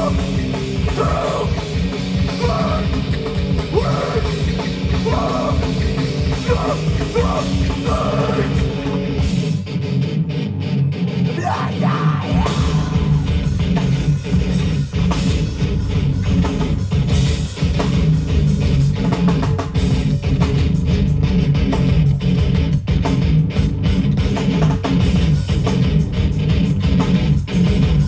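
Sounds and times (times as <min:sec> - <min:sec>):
vocals: 0:00.0 - 0:09.2, 0:11.3 - 0:13.9
distorted guitars and bass: 0:00.0 - 0:28.0
hardcore band playing live: 0:00.0 - 0:28.0.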